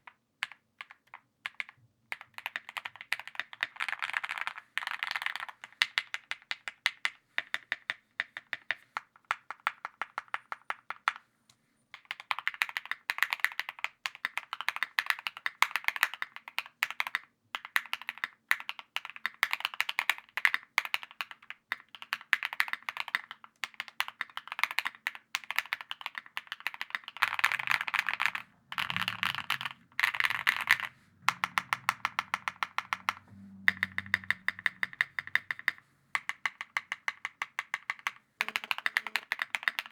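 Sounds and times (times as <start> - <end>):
mechanical keyboard typing: 22.0 - 39.9.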